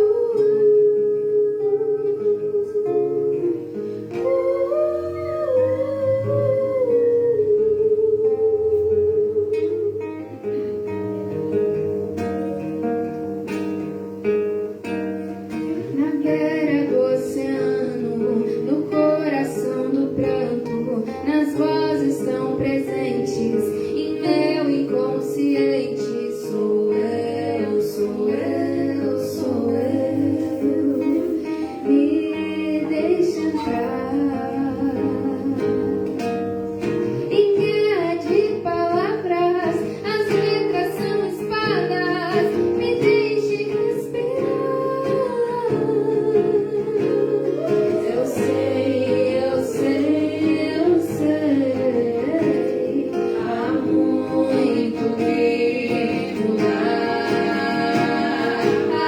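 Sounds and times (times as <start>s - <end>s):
person singing: 0.0s - 10.8s, 15.5s - 59.0s
acoustic guitar strumming: 0.0s - 59.0s.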